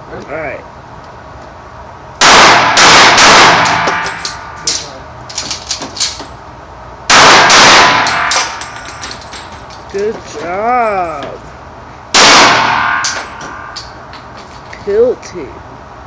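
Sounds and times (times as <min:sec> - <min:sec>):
loud gunshots: 0:02.2 - 0:04.2, 0:07.1 - 0:08.6, 0:12.1 - 0:13.6
light clicks and clinks: 0:04.2 - 0:06.4, 0:08.4 - 0:11.5, 0:13.3 - 0:15.3.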